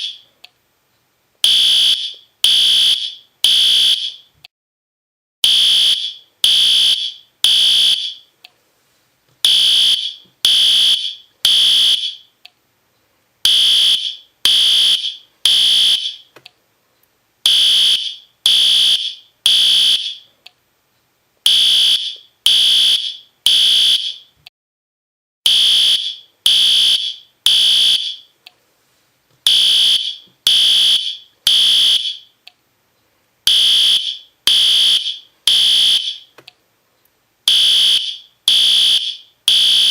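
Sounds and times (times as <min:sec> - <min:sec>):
fire alarm horn blasts: 0:01.4 - 0:04.3, 0:05.4 - 0:08.3, 0:09.4 - 0:12.3, 0:13.5 - 0:16.3, 0:17.5 - 0:20.2, 0:21.5 - 0:24.3, 0:25.5 - 0:28.3, 0:29.5 - 0:32.3, 0:33.5 - 0:36.3, 0:37.5 - 0:39.9.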